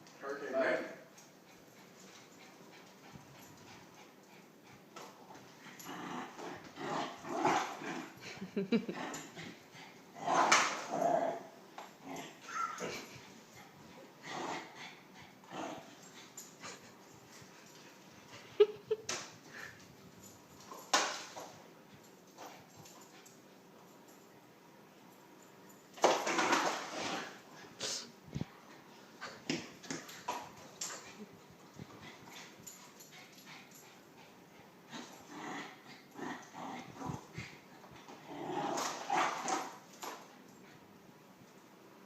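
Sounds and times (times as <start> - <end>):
dog squealing: 12.4 - 13.0.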